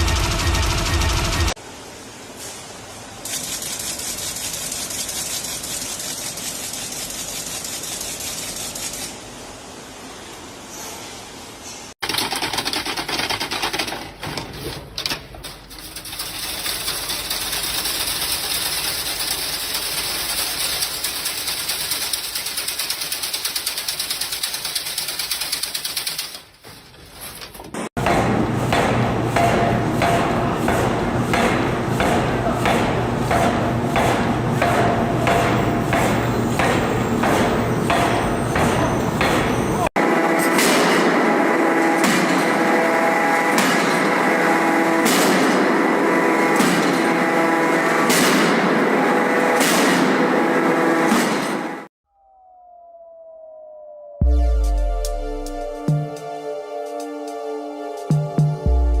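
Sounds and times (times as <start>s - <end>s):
machinery clattering rapidly: 0.0s - 1.6s, 3.3s - 8.8s, 12.0s - 26.6s
machine hum: 0.0s - 2.2s
machine striking rhythmically: 54.2s - 59.0s.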